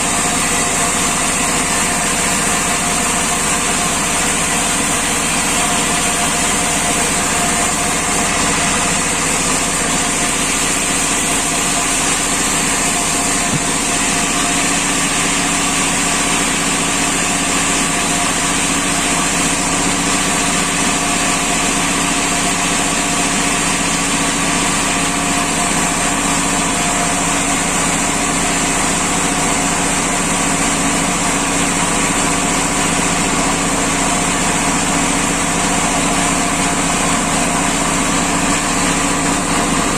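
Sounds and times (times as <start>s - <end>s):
sawmill machinery droning: 0.0s - 39.9s.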